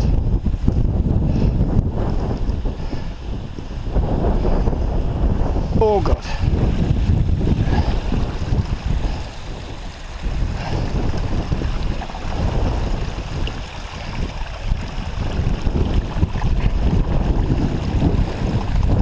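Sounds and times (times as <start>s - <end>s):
wind buffeting microphone: 0.0s - 19.0s.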